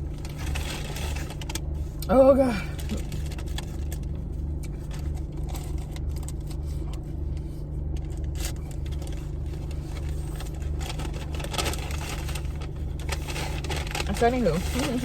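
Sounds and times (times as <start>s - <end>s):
car idling with air conditioning: 0.0s - 15.0s
chewing and food handling clicks: 2.8s - 9.8s.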